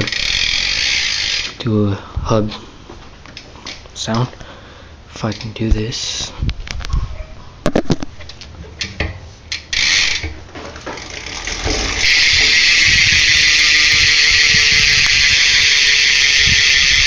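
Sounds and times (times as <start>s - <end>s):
bike hub ratcheting buzz: 0.0s - 1.6s, 8.8s - 17.0s.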